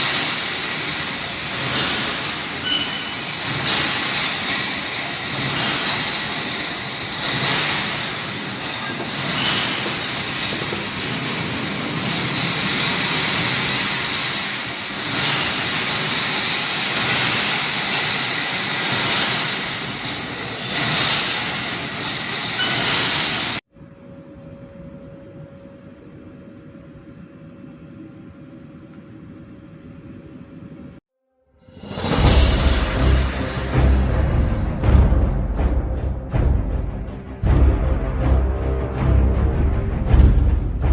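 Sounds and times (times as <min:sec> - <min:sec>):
wire mesh machine clattering: 0:00.0 - 0:23.6
quiet steady hum: 0:23.7 - 0:31.0.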